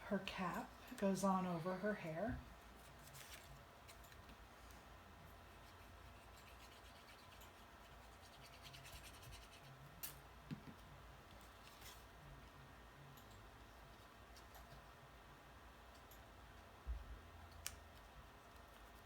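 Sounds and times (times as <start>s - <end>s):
paper scratching and rubbing: 5.5s - 9.8s.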